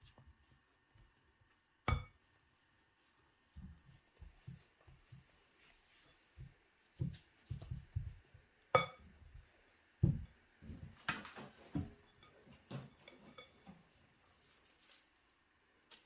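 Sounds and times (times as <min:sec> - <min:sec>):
dishes and utensils knocking: 0:10.0 - 0:13.8.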